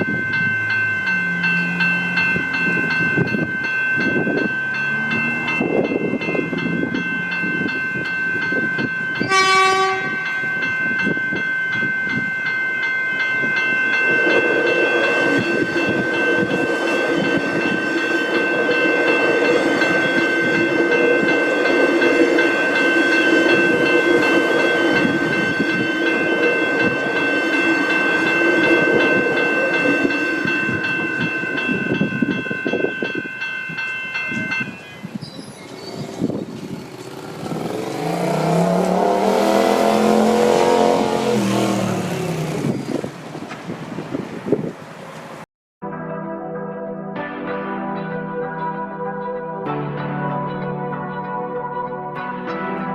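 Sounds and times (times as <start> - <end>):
level crossing bells ringing: 0.0 - 42.9
electric train rumbling: 0.0 - 45.4
train horn blast: 9.2 - 10.4, 38.1 - 42.5.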